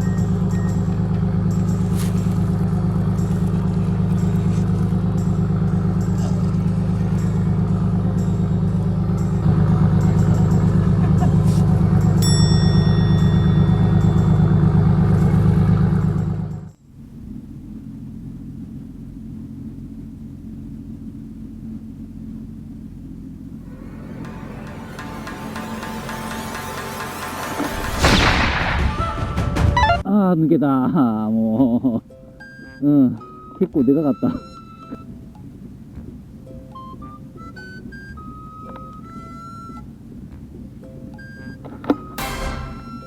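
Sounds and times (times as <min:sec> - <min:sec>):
boat engine running: 0:00.0 - 0:30.1.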